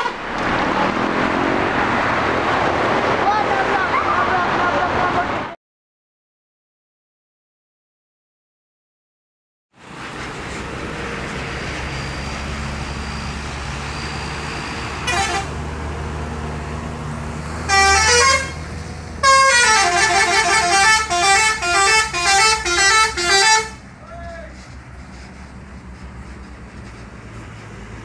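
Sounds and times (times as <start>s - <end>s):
musical bus horn tune: 0.0s - 0.3s, 15.0s - 15.6s, 17.7s - 23.8s
bus horn blast: 0.0s - 0.4s, 15.0s - 15.6s, 17.7s - 23.8s
bus engine and road noise: 0.0s - 5.6s, 9.7s - 28.0s.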